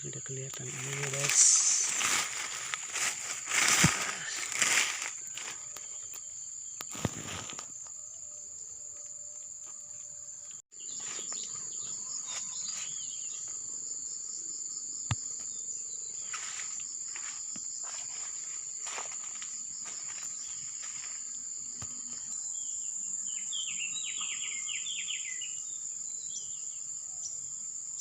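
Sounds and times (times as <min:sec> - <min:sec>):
insects droning: 0:00.0 - 0:28.0.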